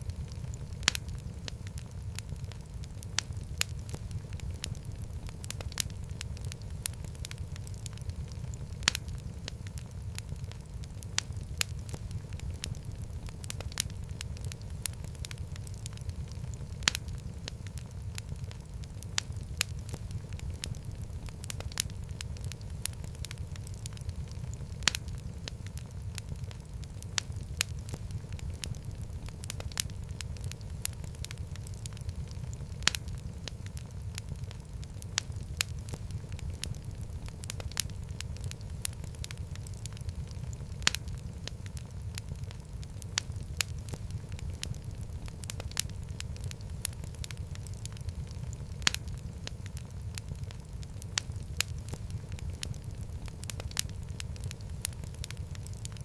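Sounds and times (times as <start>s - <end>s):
fire crackling and popping: 0.0s - 56.0s
fire rumbling: 0.0s - 56.0s.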